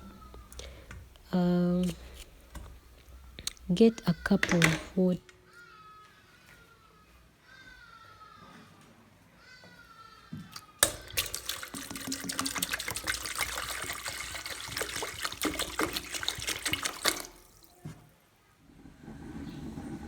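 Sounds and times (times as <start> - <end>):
water pouring from a cup: 10.8 - 17.8.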